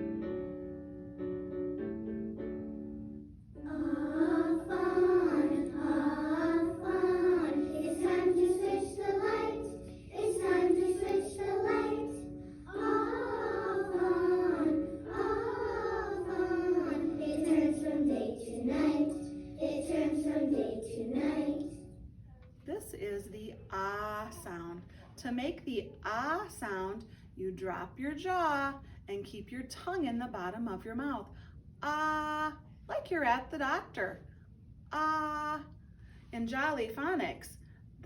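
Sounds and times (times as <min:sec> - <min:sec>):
children singing: 0:03.6 - 0:21.8.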